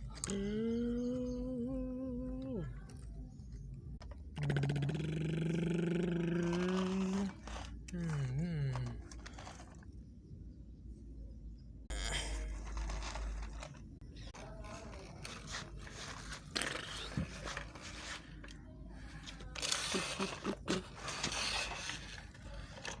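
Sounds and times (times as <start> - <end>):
toy vehicles scraping and clicking: 5.8 - 10.1, 12.3 - 23.0.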